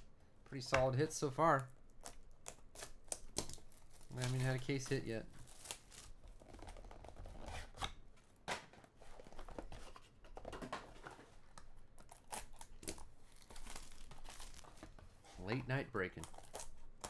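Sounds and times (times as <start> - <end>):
card packaging being torn open: 2.0 - 8.0, 12.0 - 14.8, 16.2 - 17.0
cards being handled: 3.2 - 11.0.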